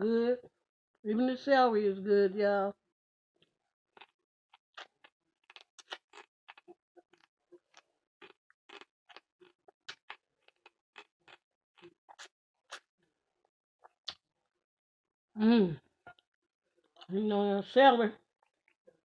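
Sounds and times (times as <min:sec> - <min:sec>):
person chewing food: 0:04.0 - 0:04.2, 0:04.8 - 0:12.9, 0:13.8 - 0:14.2.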